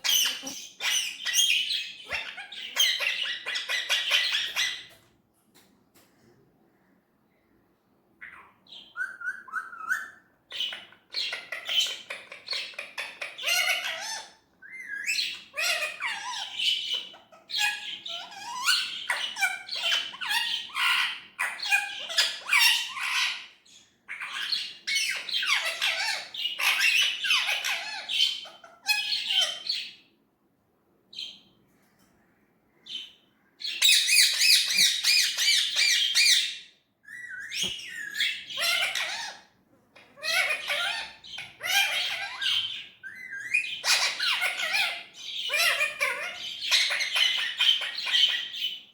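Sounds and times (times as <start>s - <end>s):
parakeet chattering: 0.0s - 4.9s, 33.8s - 36.5s, 37.1s - 39.4s, 40.0s - 48.7s
parakeet squawk: 0.0s - 5.0s, 8.2s - 30.0s, 32.9s - 48.8s.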